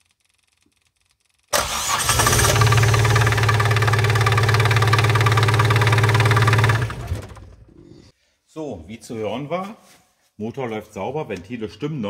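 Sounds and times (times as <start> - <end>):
diesel engine starting and idling: 1.5 - 7.8.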